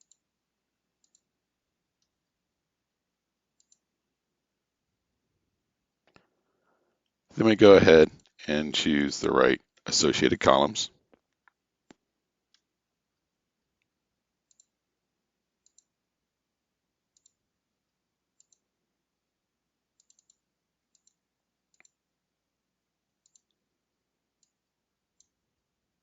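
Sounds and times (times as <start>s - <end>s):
faint computer mouse clicks: 0.0s - 0.2s, 1.0s - 1.3s, 3.6s - 3.9s, 14.5s - 14.8s, 15.6s - 15.9s, 17.1s - 17.4s, 18.4s - 18.6s, 20.0s - 22.0s, 23.2s - 23.6s.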